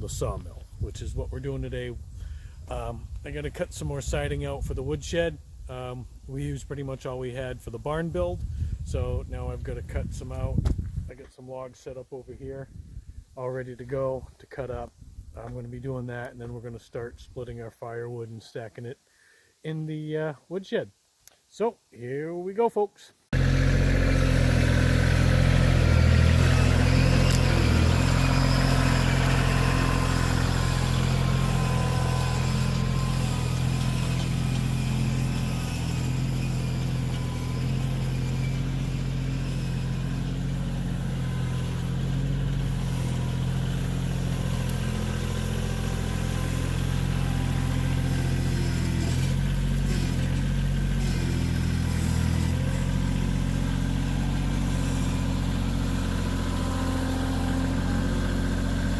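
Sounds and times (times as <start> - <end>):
sawmill engine running steadily: 23.4 - 58.9.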